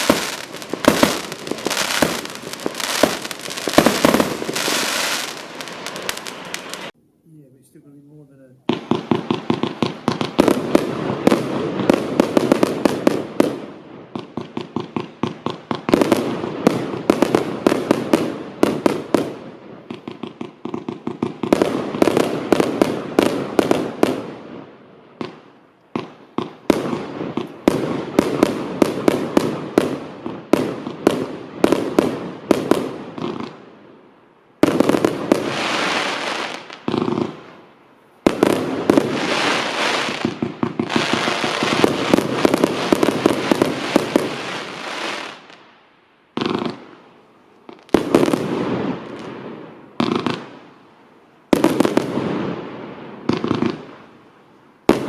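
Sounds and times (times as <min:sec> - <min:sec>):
fireworks bangs and cracks: 0:00.0 - 0:07.0, 0:08.6 - 0:33.7, 0:34.6 - 0:37.6, 0:38.2 - 0:45.6, 0:47.6 - 0:50.7, 0:51.5 - 0:54.1.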